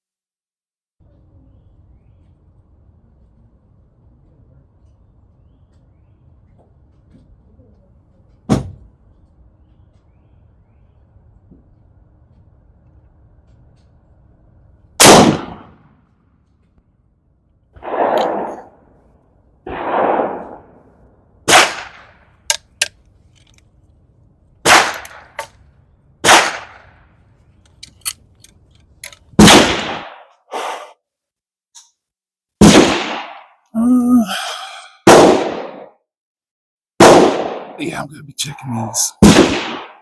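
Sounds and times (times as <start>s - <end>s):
loud sharp gunshots: 15.0s - 15.8s, 17.8s - 18.9s, 19.7s - 20.9s, 21.5s - 22.9s, 24.6s - 25.5s, 26.2s - 27.0s, 29.4s - 30.2s, 32.6s - 33.4s, 35.1s - 35.9s, 37.0s - 38.0s, 39.2s - 40.0s
dull low gunshots: 15.0s - 16.0s, 17.8s - 19.0s, 19.7s - 22.9s, 24.6s - 25.5s, 26.2s - 27.2s, 27.8s - 30.3s, 32.6s - 33.4s, 35.1s - 35.9s, 37.0s - 38.0s, 39.2s - 40.0s
faint sharp cracks: 19.7s - 24.0s, 24.6s - 30.4s.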